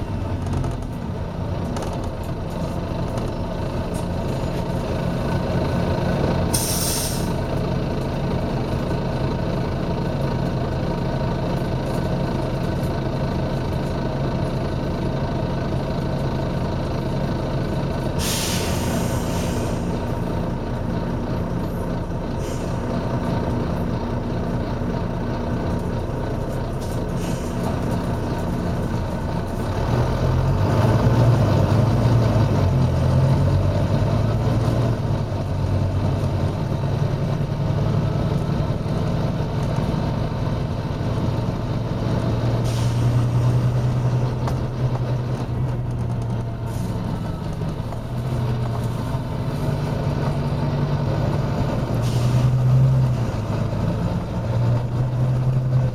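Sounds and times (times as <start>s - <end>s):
bus diesel engine running: 0.0s - 55.9s
air brake hisses: 6.5s - 7.4s, 18.2s - 20.0s, 22.4s - 22.9s, 27.2s - 27.7s, 42.6s - 43.5s, 51.9s - 52.7s.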